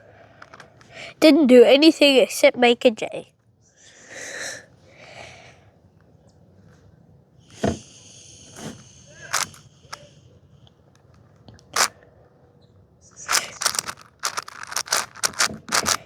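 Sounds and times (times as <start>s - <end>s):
puzzle cube turning clicks: 9.3s - 9.6s, 13.3s - 16.0s.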